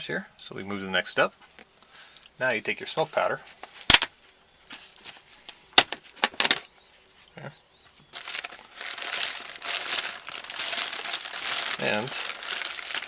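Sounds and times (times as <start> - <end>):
packaging crinkling and rustling: 8.1 - 13.0.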